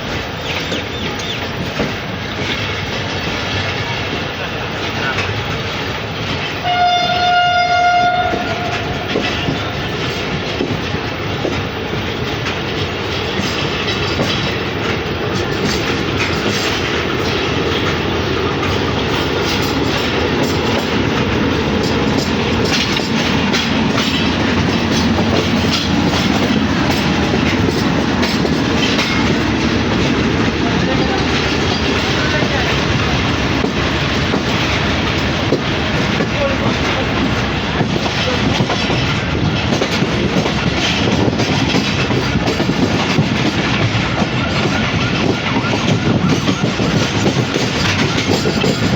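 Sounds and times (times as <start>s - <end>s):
train coaches rumbling: 0.0s - 48.9s
train horn: 6.6s - 9.3s
wheels clicking over rail joints: 7.8s - 48.9s.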